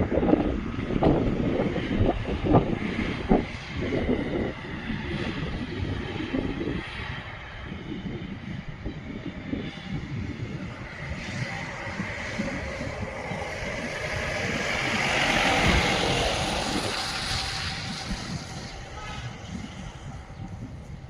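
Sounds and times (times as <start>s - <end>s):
low rumble: 0.0s - 21.0s
vehicle passing by: 9.8s - 21.0s.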